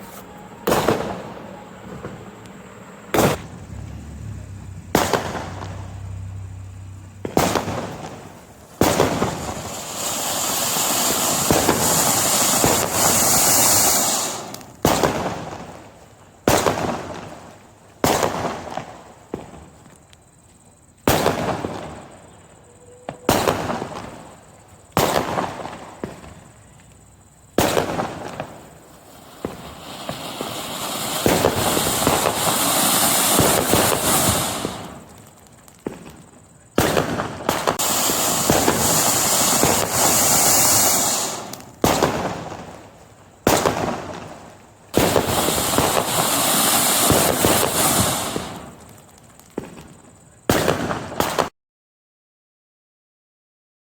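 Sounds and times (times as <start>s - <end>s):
fireworks bangs: 0.0s - 20.0s, 20.8s - 51.5s
hissing spray of sparks: 8.8s - 15.0s, 29.0s - 35.6s, 37.5s - 42.1s, 45.0s - 49.5s.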